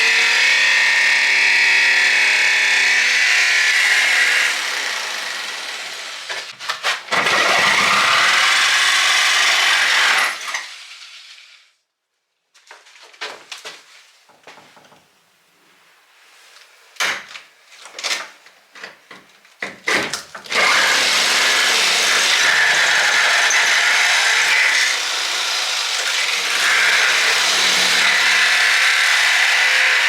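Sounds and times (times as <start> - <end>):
power tool boring into door: 7.1 - 10.7, 20.5 - 30.0.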